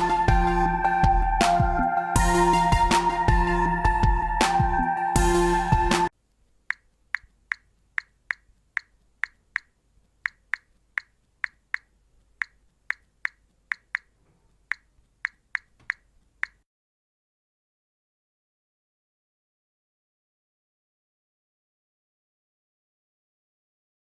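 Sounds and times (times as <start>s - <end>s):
touchscreen keyboard clicks: 6.7s - 16.6s.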